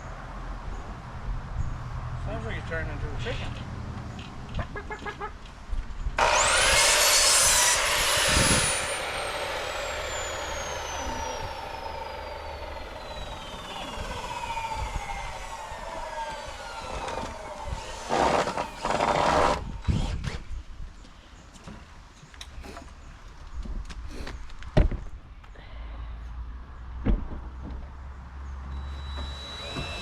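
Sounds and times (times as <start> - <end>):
power saw cutting wood: 6.2 - 20.4, 28.7 - 30.0.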